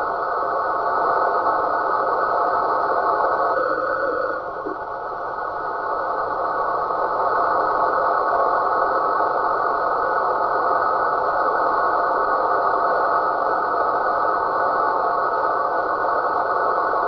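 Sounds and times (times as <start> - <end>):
radio signal rushing buzz: 3.5 - 4.9.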